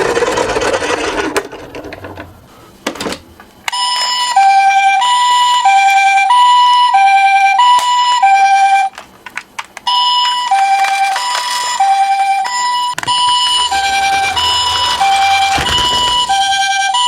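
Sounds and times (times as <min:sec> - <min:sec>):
toy two-tone siren: 0:03.8 - 0:09.0, 0:09.9 - 0:15.5.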